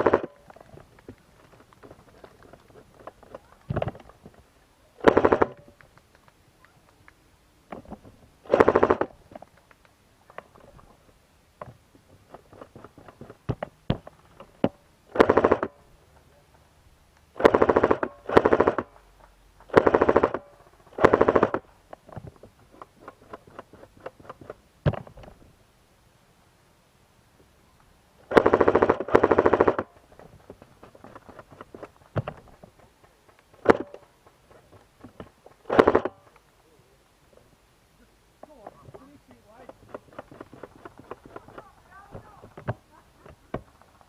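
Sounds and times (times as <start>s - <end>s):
airsoft guns firing bursts: 0.0s - 0.4s, 5.0s - 5.8s, 8.4s - 9.1s, 15.1s - 15.8s, 17.4s - 19.0s, 19.7s - 21.7s, 28.3s - 30.0s, 35.6s - 36.2s.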